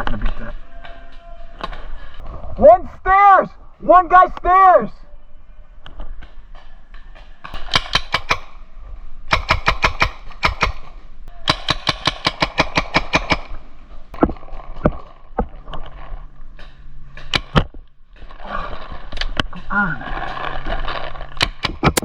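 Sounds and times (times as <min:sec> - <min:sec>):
paintball markers firing: 0:07.5 - 0:08.6, 0:09.3 - 0:13.6, 0:17.2 - 0:17.7, 0:21.4 - 0:22.0.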